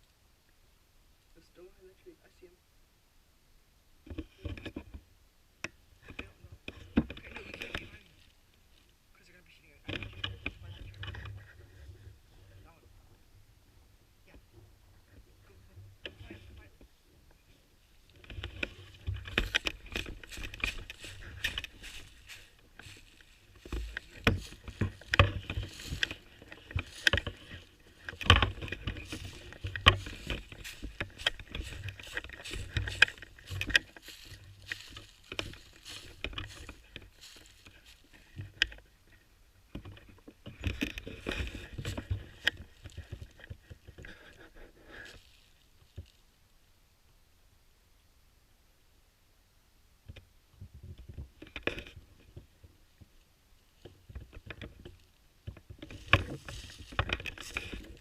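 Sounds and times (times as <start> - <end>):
rustling and crunching leaves: 6.0 - 13.1, 14.4 - 46.5, 51.5 - 58.0.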